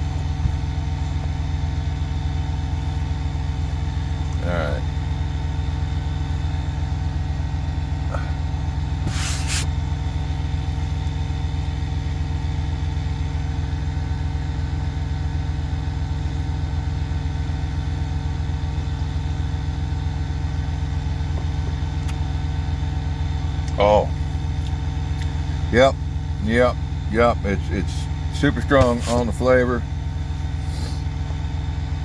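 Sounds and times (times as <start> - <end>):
truck engine idling: 0.0 - 32.0
brief hiss: 9.1 - 9.7.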